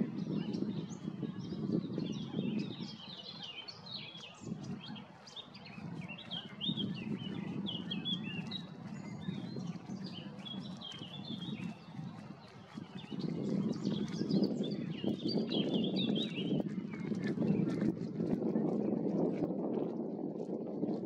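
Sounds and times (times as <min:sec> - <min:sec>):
birds chirping: 0:01.7 - 0:11.8.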